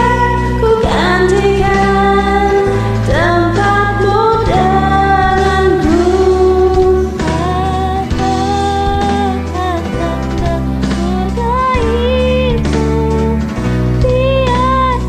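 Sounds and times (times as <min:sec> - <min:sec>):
karaoke backing track: 0:00.0 - 0:15.0
person singing: 0:00.0 - 0:15.0.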